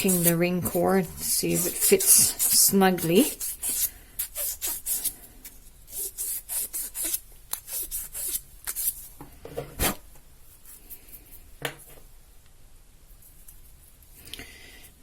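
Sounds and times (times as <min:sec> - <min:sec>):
sandpaper rasping: 0:00.0 - 0:05.1, 0:05.9 - 0:09.0.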